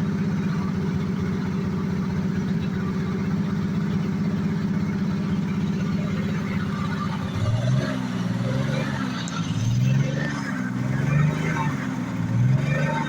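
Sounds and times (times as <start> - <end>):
engine running: 0.0 - 13.0.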